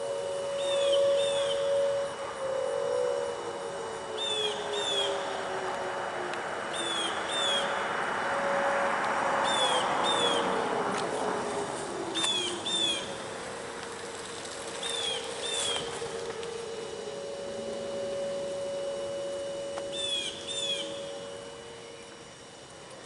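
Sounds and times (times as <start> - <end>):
warning sirens winding down: 0.0 - 23.0
bird chirping: 6.7 - 7.7, 12.2 - 13.1, 19.8 - 21.3.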